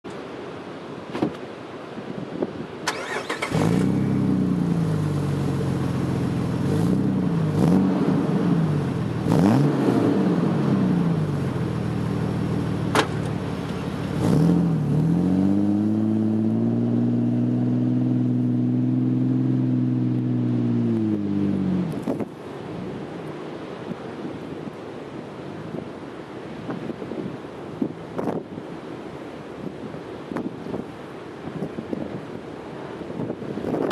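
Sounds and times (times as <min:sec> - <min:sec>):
car engine revving: 0:02.9 - 0:06.0, 0:06.6 - 0:11.2, 0:13.7 - 0:22.3.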